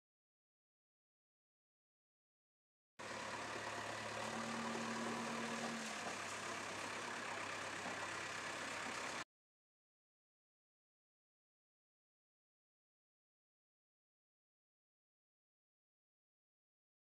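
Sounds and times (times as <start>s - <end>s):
diesel engine running: 3.0s - 9.2s.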